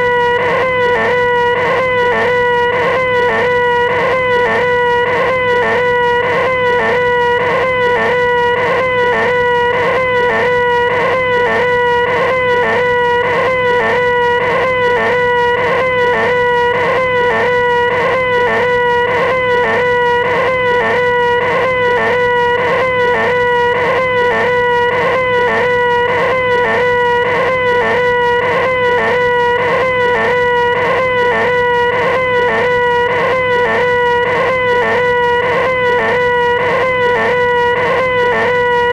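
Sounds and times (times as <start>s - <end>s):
man making nasal whine: 0.0s - 38.9s.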